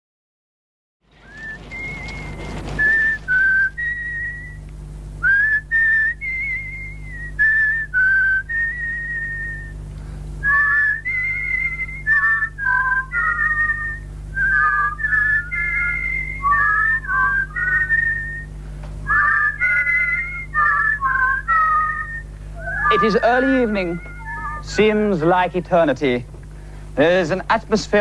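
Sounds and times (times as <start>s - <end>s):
steady low hum: 1.0s - 28.0s
whistled melody: 1.3s - 4.6s, 5.2s - 9.8s, 10.4s - 24.7s
second whistled harmony line: 1.4s - 9.8s, 10.4s - 24.8s.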